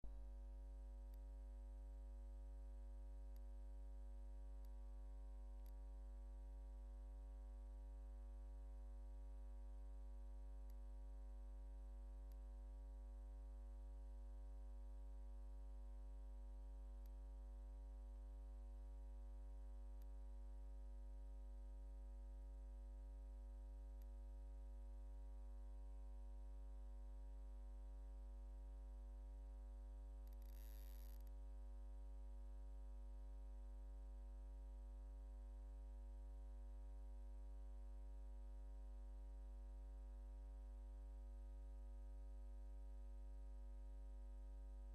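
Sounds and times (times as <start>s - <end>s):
faint ticks: 0.9s - 13.2s, 15.6s - 21.3s, 28.8s - 32.6s.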